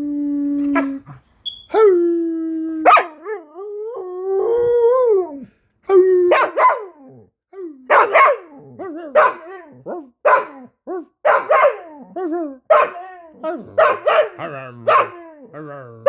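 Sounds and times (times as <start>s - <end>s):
dog barking and whining: 0.6s - 2.0s, 2.8s - 3.5s, 5.9s - 16.0s.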